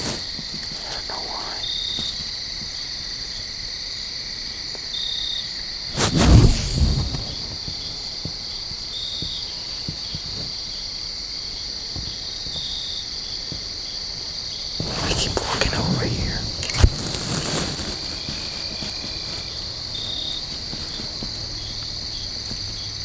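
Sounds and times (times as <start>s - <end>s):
crickets chirping: 0.0s - 23.0s
loud low thump and rustle: 6.0s - 7.9s.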